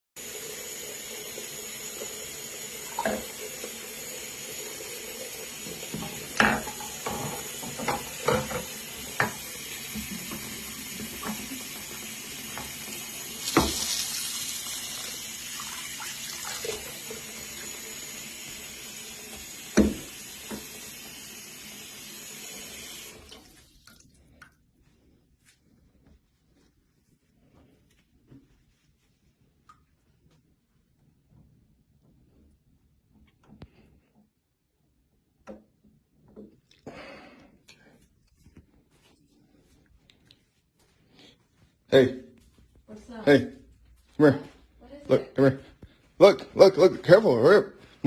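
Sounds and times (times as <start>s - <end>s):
water running from a tap: 0.2s - 24.4s.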